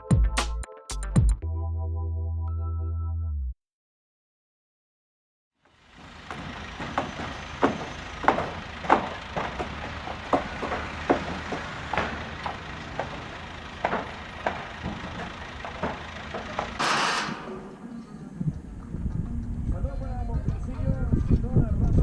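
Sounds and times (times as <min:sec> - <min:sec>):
engine rumbling: 0:05.7 - 0:21.1
sharp metallic knocks and clanks: 0:05.9 - 0:17.7.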